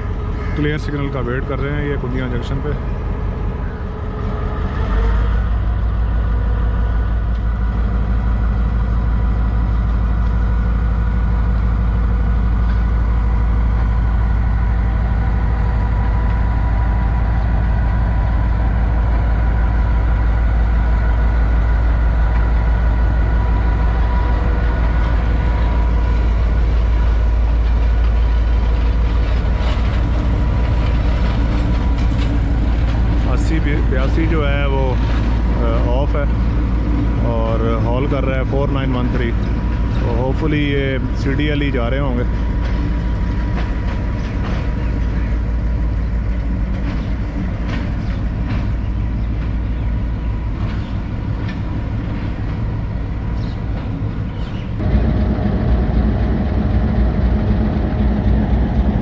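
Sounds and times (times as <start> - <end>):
locomotive engine rumbling: 0.0 - 59.0.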